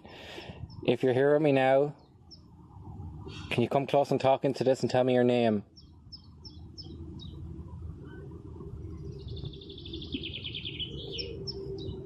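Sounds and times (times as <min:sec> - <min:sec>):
low outdoor rumble: 0:00.0 - 0:12.0
songbirds chirping: 0:00.0 - 0:12.0
bird trill: 0:05.7 - 0:12.0.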